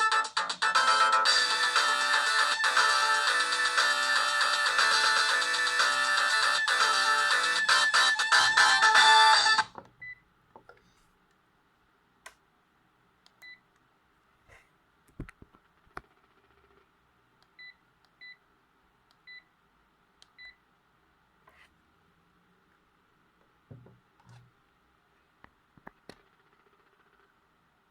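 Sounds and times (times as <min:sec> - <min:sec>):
mobile phone ringtone: 0:00.0 - 0:09.7.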